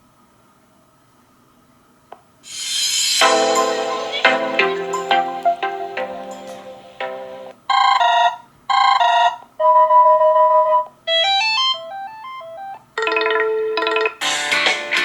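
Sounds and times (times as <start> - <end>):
electronic ringtone melodies: 3.2 - 15.0.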